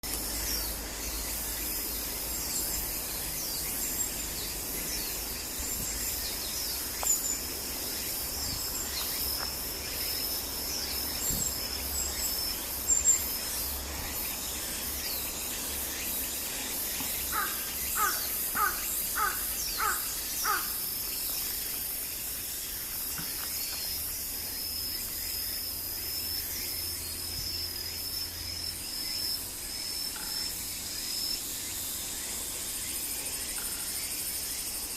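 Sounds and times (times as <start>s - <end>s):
high-pitched insect drone: 0.1s - 34.9s
crow cawing: 17.3s - 20.8s.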